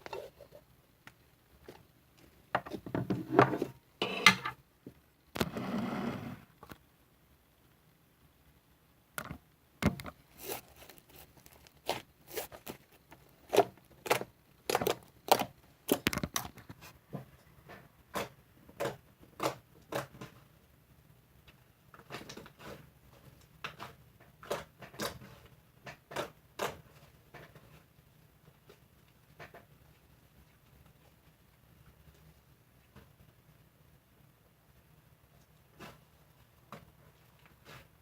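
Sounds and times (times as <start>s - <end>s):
rustling and scraping handling: 1.6s - 4.6s, 5.4s - 6.5s, 9.9s - 14.2s, 35.4s - 38.0s.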